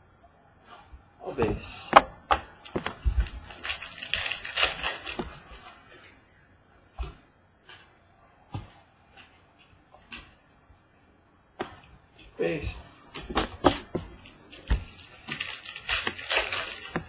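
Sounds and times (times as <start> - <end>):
cards rustling: 2.6 - 5.8, 13.2 - 17.0.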